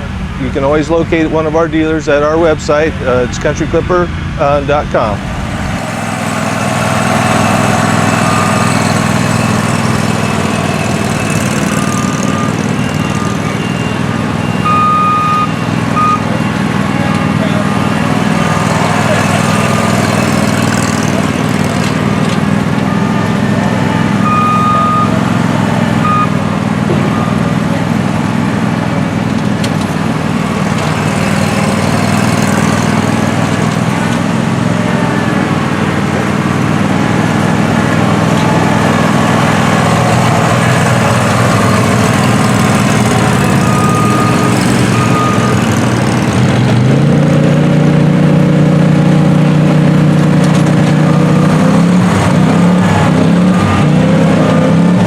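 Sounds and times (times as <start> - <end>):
riding mower engine running: 0.0 - 55.0
short high beeps: 22.9 - 26.4.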